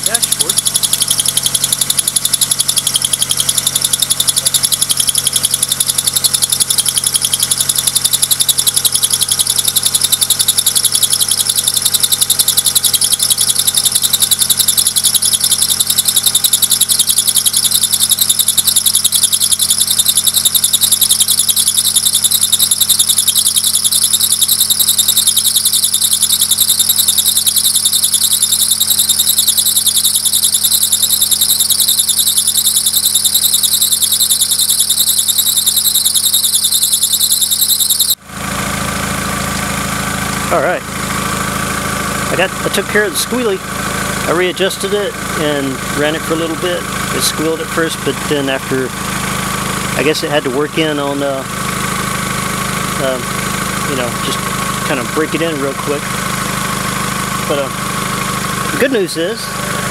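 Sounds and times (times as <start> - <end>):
high-pitched belt squeal: 0.0 - 38.2, 44.3 - 48.8, 50.0 - 51.4
car engine idling: 0.0 - 59.9.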